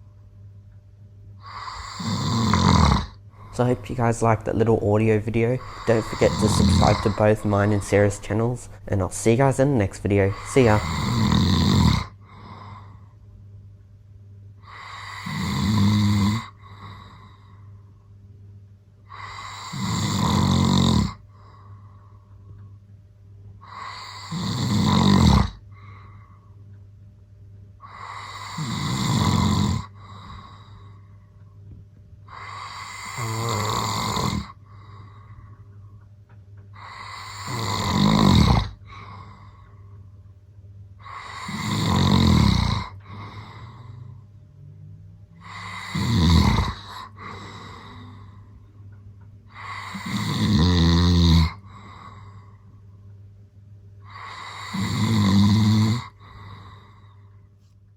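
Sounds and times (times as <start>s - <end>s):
man snoring loudly: 1.4s - 13.0s, 14.6s - 17.3s, 19.1s - 21.2s, 23.6s - 25.6s, 27.8s - 30.8s, 32.3s - 34.6s, 36.8s - 39.6s, 41.0s - 48.5s, 49.5s - 52.3s, 54.1s - 57.0s.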